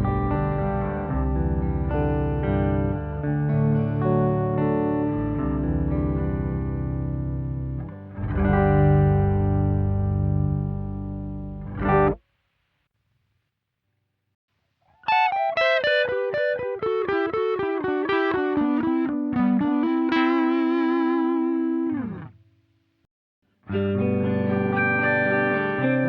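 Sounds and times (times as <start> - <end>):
electric guitar single notes: 0.0 - 12.2, 15.0 - 22.4, 23.7 - 26.0
pitch-shifted guitar chord: 23.7 - 26.0.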